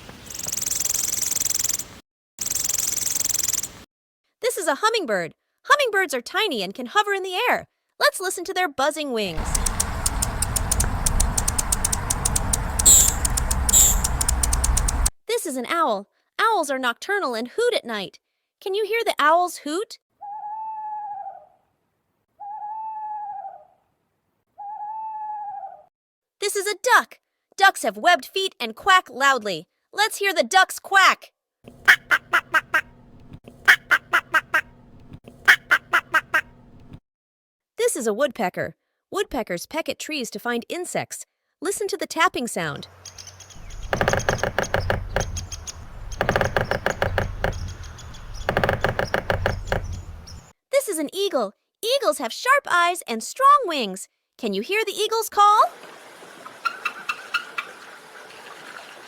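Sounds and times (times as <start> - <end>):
woodpecker tapping on wood: 9.3 - 15.1, 43.1 - 50.5
owl hooting: 9.4 - 15.1, 56.5 - 57.8.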